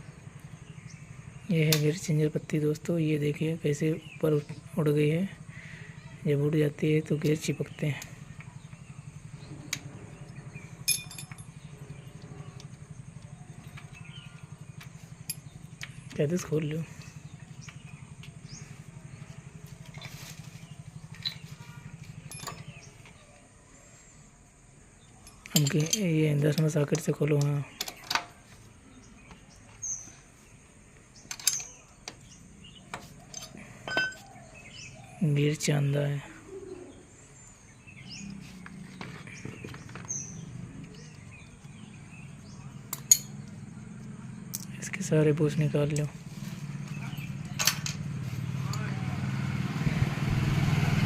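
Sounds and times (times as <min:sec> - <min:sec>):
motorcycle engine idling: 0:00.0 - 0:35.2, 0:36.8 - 0:51.0
birds chirping faintly: 0:00.0 - 0:51.0.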